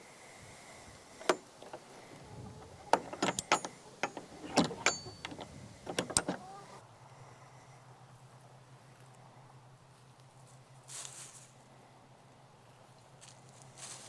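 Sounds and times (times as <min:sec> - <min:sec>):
sharp knocks and metallic clatters: 0:01.2 - 0:06.8.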